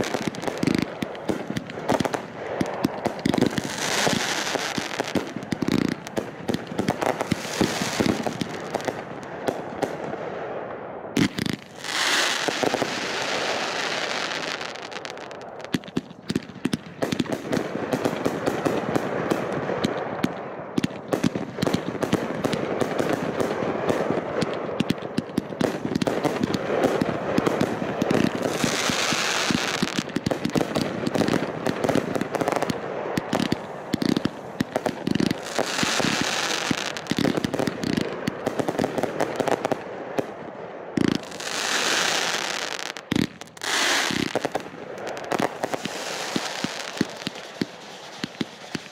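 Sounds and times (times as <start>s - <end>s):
fireworks crackling and popping: 0.0s - 48.9s
fireworks hissing: 45.2s - 48.9s.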